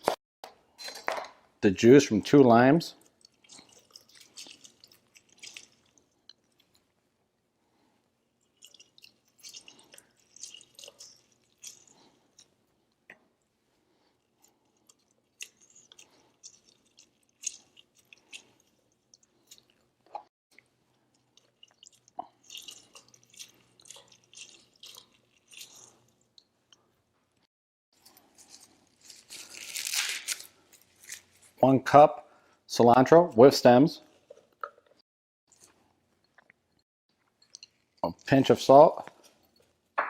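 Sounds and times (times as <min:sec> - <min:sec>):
limes squeezed by hand: 0:28.1 - 0:31.6.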